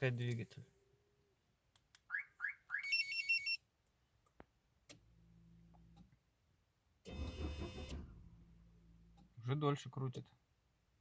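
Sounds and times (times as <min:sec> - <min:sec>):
car alarm chirps: 0:02.1 - 0:03.6
starter motor cranking engine: 0:07.1 - 0:08.0.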